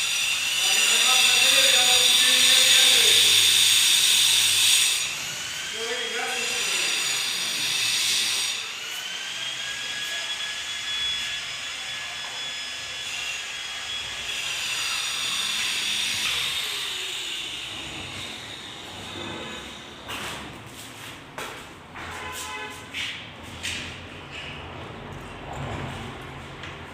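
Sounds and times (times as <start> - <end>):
power tool high-pitched whine: 0.0 - 20.0.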